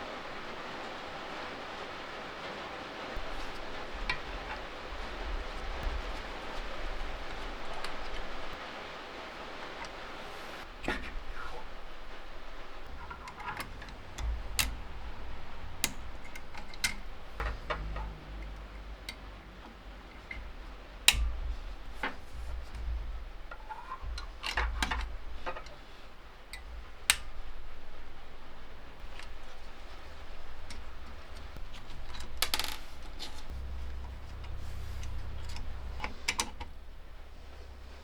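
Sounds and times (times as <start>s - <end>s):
clicks and knocks of metal parts: 3.2s - 8.6s, 9.7s - 38.0s
low rumble: 10.7s - 38.0s.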